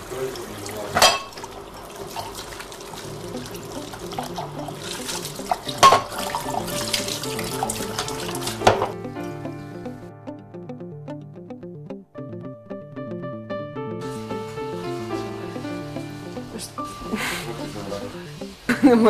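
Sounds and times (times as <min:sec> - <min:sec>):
crockery clinking: 0:01.0 - 0:01.4, 0:05.2 - 0:06.9
quiet instrumental music: 0:03.0 - 0:19.0.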